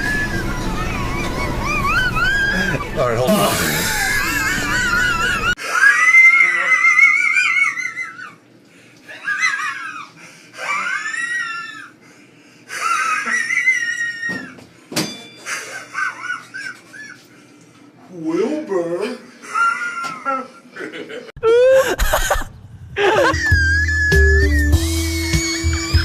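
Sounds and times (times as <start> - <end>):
person wheezing laugh: 2.5 - 8.2, 12.7 - 14.1, 19.4 - 23.5.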